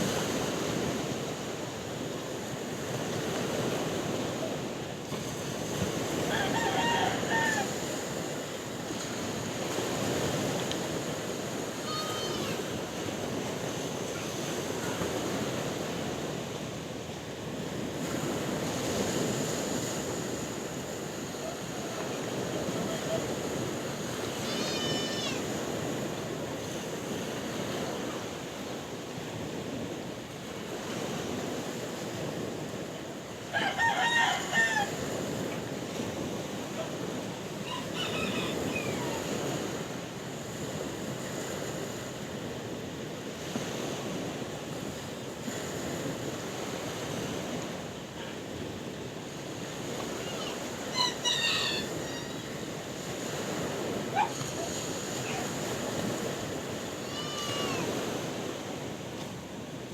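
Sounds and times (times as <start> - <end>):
sea waves washing onto shore: 0.0 - 59.9
short animal calls: 11.8 - 12.7, 24.3 - 25.4, 50.2 - 52.7, 57.0 - 57.9.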